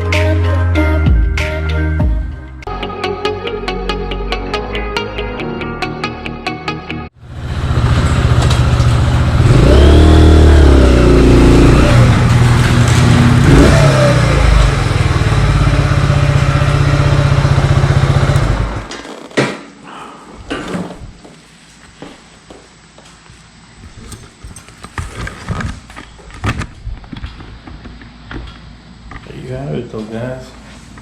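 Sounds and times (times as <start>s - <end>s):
motorcycle engine revving: 7.2s - 19.3s.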